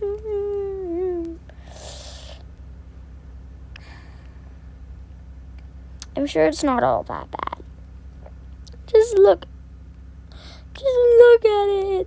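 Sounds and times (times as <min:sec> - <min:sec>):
faint breath: 0:01.5 - 0:02.5, 0:03.8 - 0:04.8, 0:10.3 - 0:10.7
breathy sigh: 0:03.8 - 0:04.6.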